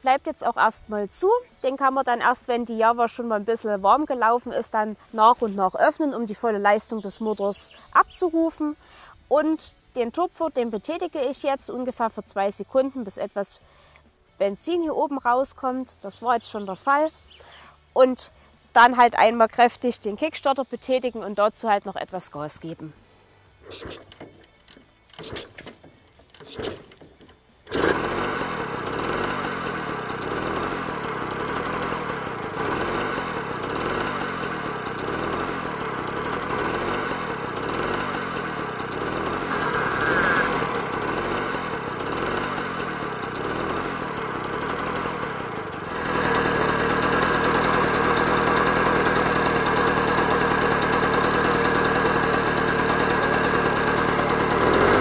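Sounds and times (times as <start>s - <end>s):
moped engine kick-start clatters: 23.6s - 55.0s
two-stroke moped engine running: 23.6s - 55.0s.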